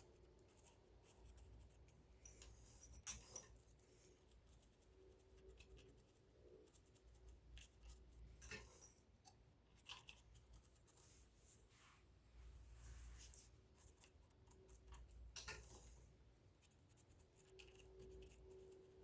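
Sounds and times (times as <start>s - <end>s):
clicks and scrapes of metal parts: 2.2s - 4.1s, 8.2s - 10.2s, 14.5s - 16.2s.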